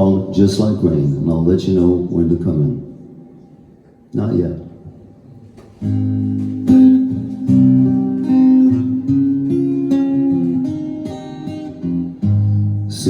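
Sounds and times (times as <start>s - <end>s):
acoustic guitar chords strummed: 5.6s - 13.0s.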